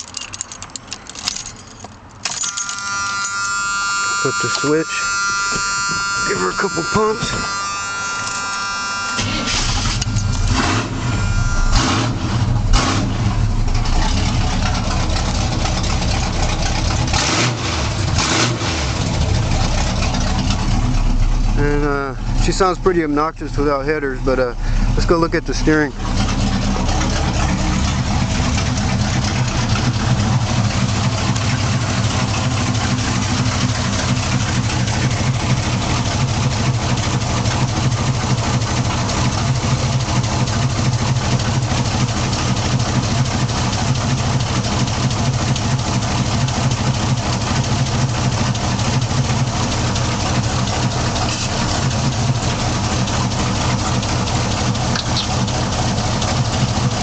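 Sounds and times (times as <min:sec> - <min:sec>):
loud engine idling: 0:01.6 - 0:57.0.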